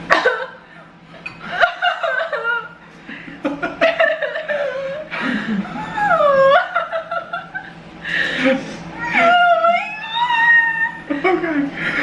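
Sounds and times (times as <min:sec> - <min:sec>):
person laughing in pain: 0:03.4 - 0:07.8
long wavering cry: 0:09.0 - 0:11.2.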